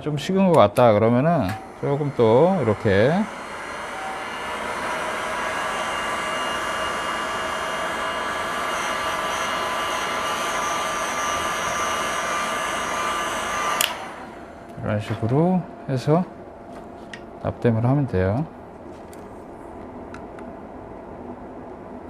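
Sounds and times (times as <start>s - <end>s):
heat gun blowing with fan whine: 0.5s - 16.2s
heat gun switch click: 1.4s - 1.7s, 13.7s - 14.1s.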